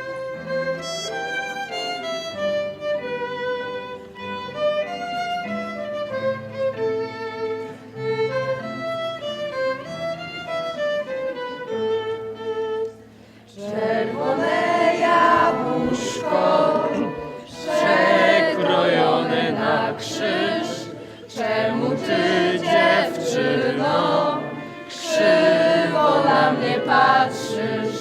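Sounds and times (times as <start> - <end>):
violin melody: 0.0 - 28.0
sustained accompanying notes: 13.5 - 28.0.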